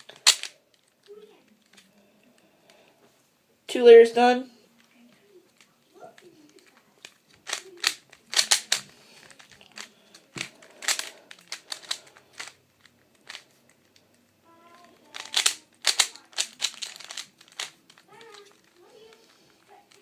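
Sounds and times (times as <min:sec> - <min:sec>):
speed cube layers clacking: 0:00.0 - 0:00.5, 0:06.6 - 0:13.9, 0:14.8 - 0:20.0.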